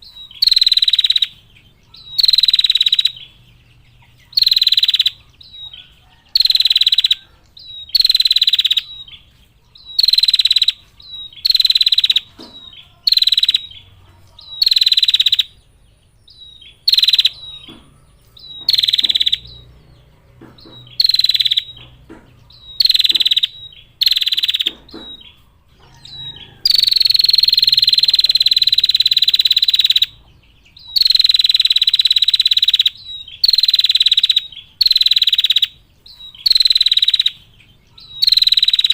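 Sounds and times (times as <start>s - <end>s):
bird buzzing trill call: 0.3s - 1.4s, 7.9s - 9.1s, 9.9s - 13.8s, 20.8s - 21.8s, 22.6s - 30.1s, 30.9s - 35.8s, 36.4s - 37.4s, 38.1s - 38.9s.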